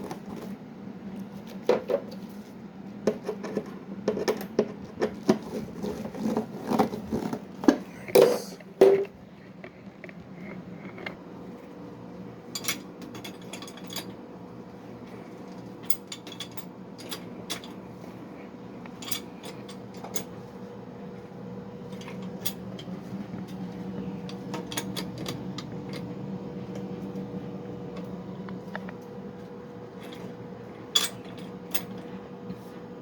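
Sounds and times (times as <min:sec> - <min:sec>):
steady low hum: 0:00.0 - 0:33.0
tools and fittings clinking: 0:12.6 - 0:14.1, 0:15.8 - 0:17.8, 0:18.9 - 0:20.3, 0:30.9 - 0:32.0.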